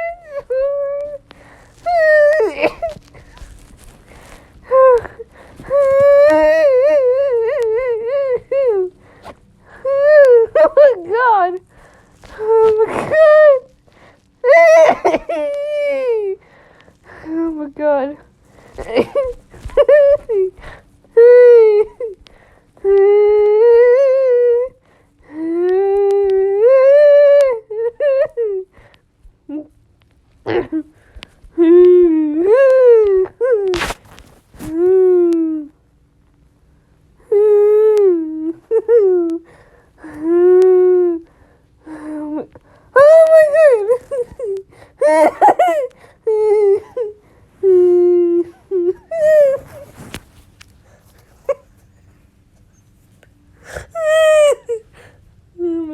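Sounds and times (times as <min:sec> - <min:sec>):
high voice humming: 0:04.6 - 0:08.9.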